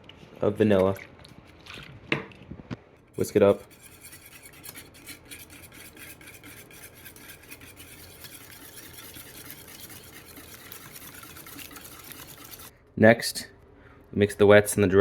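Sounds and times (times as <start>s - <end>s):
whisk scraping a bowl: 3.2s - 12.7s.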